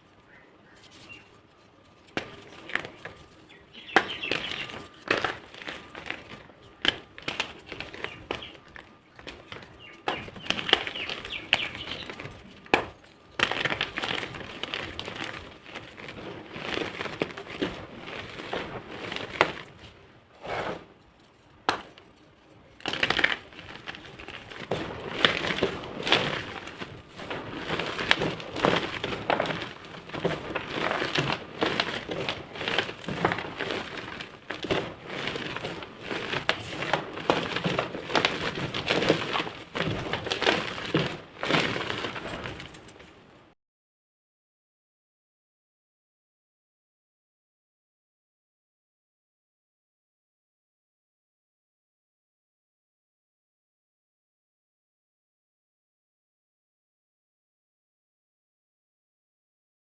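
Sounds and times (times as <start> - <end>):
chalk crunching and crackling: 0.1 - 43.2.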